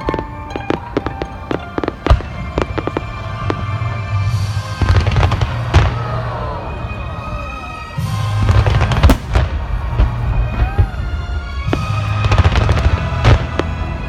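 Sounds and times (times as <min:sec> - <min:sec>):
fireworks bangs and crackles: 0:00.0 - 0:14.0
music playing: 0:00.0 - 0:14.0.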